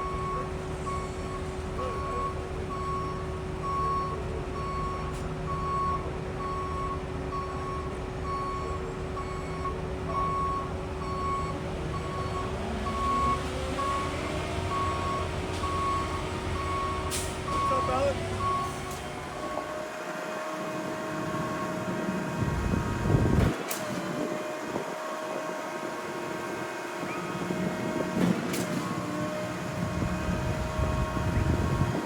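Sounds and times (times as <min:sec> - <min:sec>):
backup alarm beeping: 0:00.0 - 0:19.5
diesel engine running: 0:00.0 - 0:32.0.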